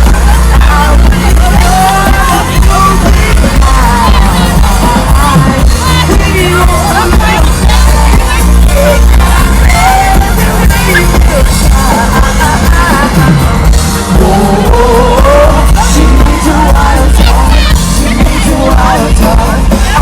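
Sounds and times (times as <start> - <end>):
audience yelling along: 0.0 - 20.0
lead vocal singing: 0.0 - 20.0
live pop band playing: 0.0 - 20.0.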